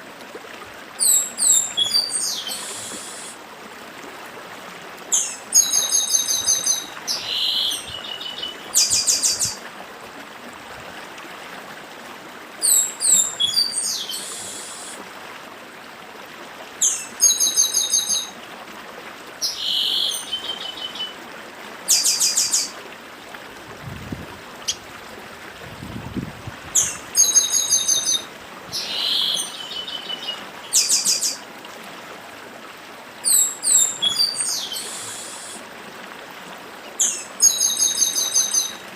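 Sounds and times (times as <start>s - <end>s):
stream rushing: 0.0s - 38.9s
blackbird singing: 1.0s - 3.2s, 5.2s - 9.6s, 12.6s - 14.9s, 26.8s - 31.4s, 33.3s - 35.6s.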